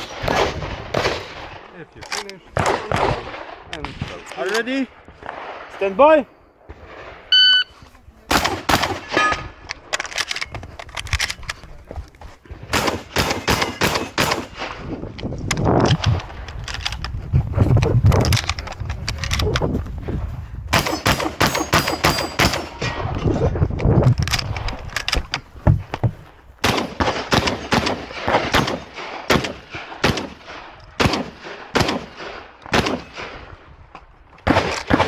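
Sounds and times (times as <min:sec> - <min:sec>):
shotgun shots: 0:00.0 - 0:01.7, 0:02.5 - 0:04.2, 0:08.3 - 0:09.9, 0:12.6 - 0:14.9, 0:20.7 - 0:23.1, 0:26.6 - 0:33.5, 0:34.5 - 0:35.0.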